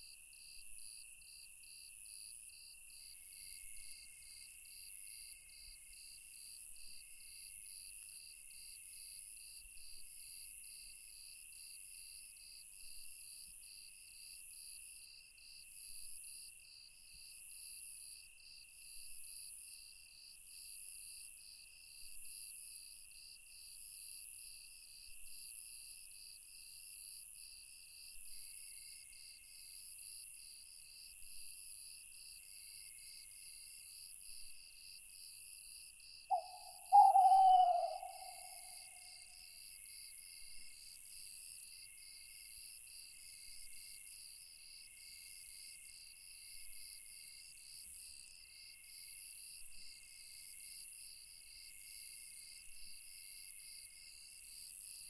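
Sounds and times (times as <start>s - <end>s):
faint background insects: 0.0s - 55.0s
insect steady trill: 0.0s - 55.0s
insect chirping evenly: 36.3s - 38.9s.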